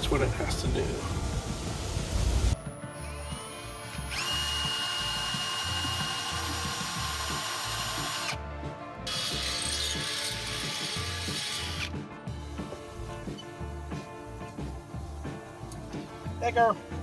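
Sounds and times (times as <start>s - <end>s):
electric drill whining: 2.8s - 8.4s, 9.1s - 11.9s.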